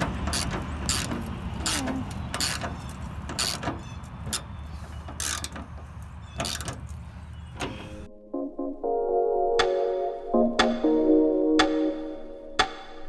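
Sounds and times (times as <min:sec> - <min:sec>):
hand ratchet clicking: 0:00.0 - 0:07.8.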